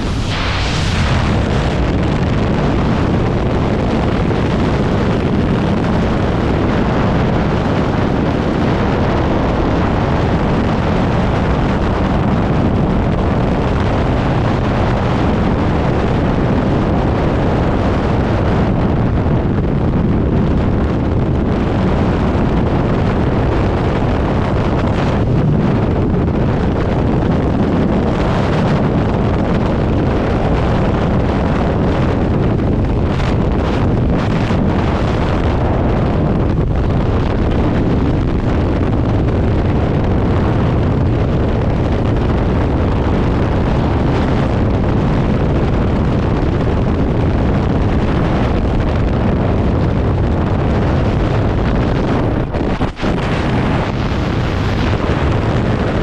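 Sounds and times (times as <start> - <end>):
loud steady rushing noise: 0.0 - 56.0.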